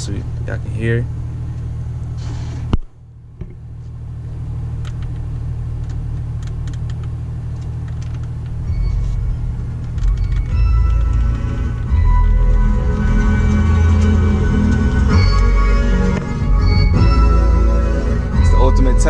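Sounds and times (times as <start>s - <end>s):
car engine idling: 0.0s - 19.0s
bass-heavy music from car stereo: 8.6s - 19.0s.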